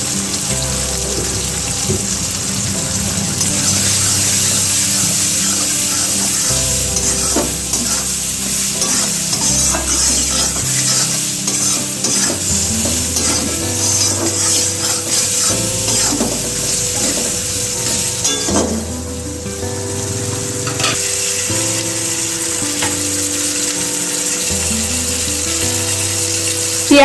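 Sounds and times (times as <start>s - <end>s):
vegetables sizzling in a pan: 0.0s - 27.0s
spatula scraping a pan: 3.4s - 18.8s.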